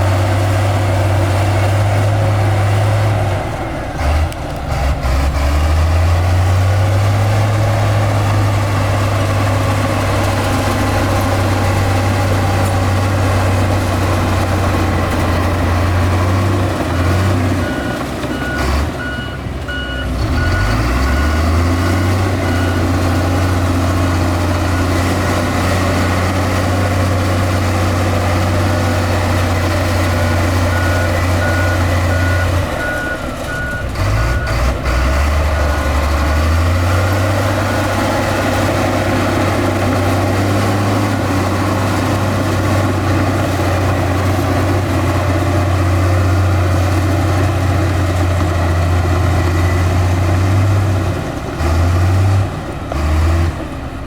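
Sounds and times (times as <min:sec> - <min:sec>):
heavy diesel machinery running: 0:00.0 - 0:54.0
reversing alarm beeping: 0:16.9 - 0:25.2, 0:29.6 - 0:38.8.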